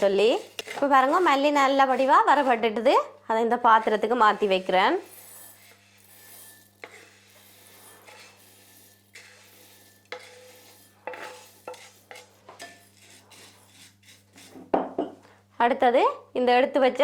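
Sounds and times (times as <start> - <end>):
spoon scraping in a pan: 0.0 - 3.0, 3.7 - 14.7
rustle of seeds: 4.6 - 11.6.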